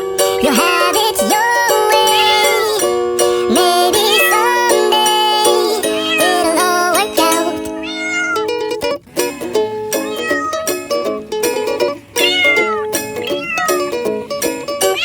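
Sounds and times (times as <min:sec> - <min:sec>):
bouncy plucked string music: 0:00.0 - 0:15.0
cat meowing: 0:01.9 - 0:02.8, 0:03.8 - 0:05.0, 0:05.6 - 0:07.0, 0:07.7 - 0:08.5, 0:10.0 - 0:10.8, 0:12.2 - 0:13.9.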